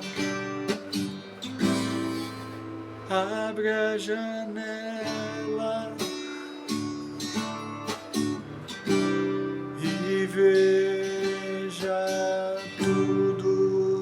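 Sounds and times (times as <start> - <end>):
acoustic guitar strummed chords: 0.0 - 14.0.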